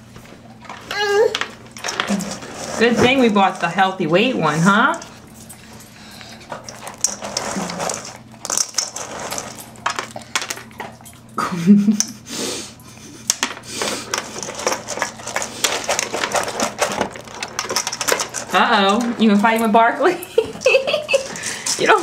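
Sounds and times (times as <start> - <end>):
dry kibble clattering: 0.2 - 11.3, 13.3 - 22.0
child vocal sounds: 0.9 - 1.4.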